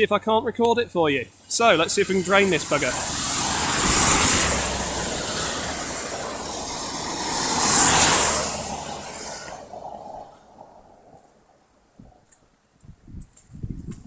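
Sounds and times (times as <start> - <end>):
vehicles passing on wet road: 1.0 - 12.0.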